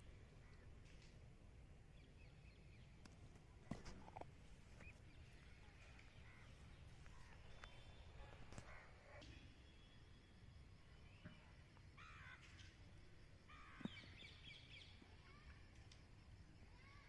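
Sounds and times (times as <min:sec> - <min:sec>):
distant bird calls: 0:01.9 - 0:15.5.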